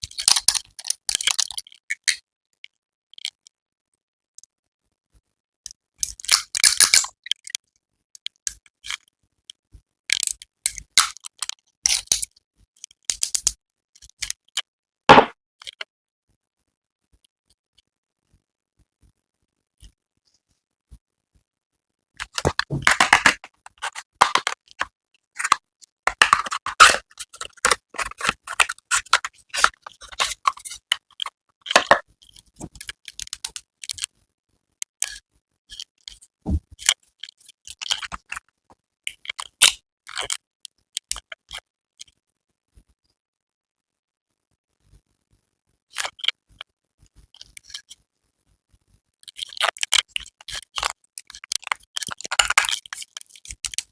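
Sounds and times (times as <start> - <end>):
packaging crinkling and rustling: 22.2 - 30.8, 51.6 - 53.0
small clicks and taps: 22.2 - 32.0, 32.6 - 34.1, 49.2 - 53.9.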